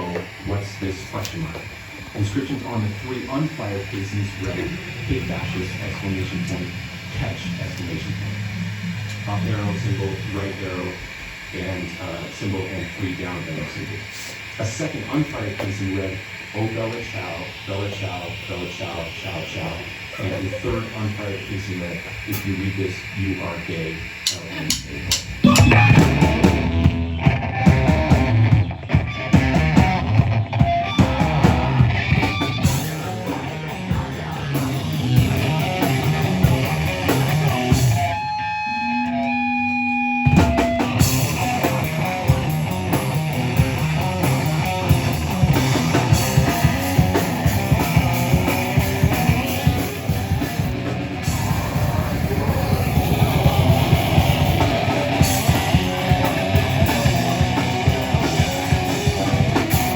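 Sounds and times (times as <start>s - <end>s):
heavy rock band playing: 24.3s - 59.9s.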